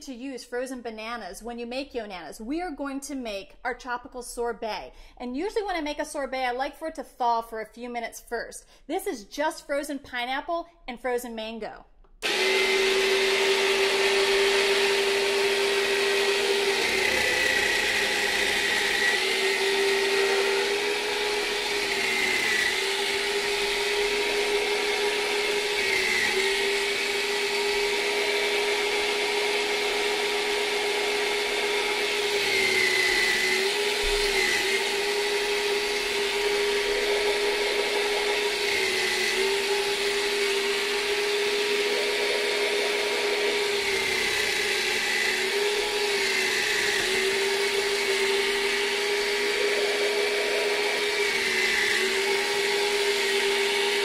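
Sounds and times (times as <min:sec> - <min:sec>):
dessert maker motor whining: 0:12.2 - 0:54.0.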